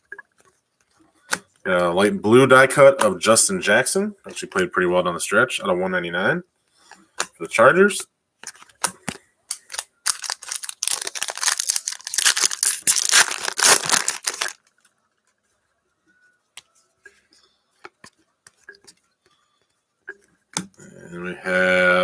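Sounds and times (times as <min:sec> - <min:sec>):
cards ticking when handled: 0:08.4 - 0:15.0
foil wrapper tearing and crinkling: 0:09.5 - 0:14.8.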